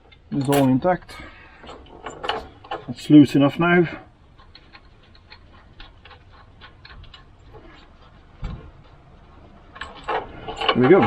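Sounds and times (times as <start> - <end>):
dull thump: 8.4 - 8.7.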